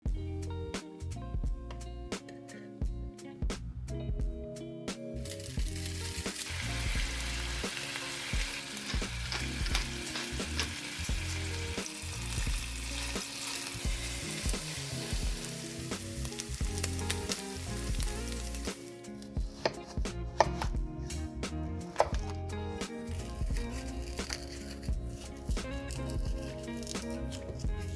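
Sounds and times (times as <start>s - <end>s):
background music: 0.0s - 27.9s
food sizzling in a frying pan: 5.2s - 19.3s.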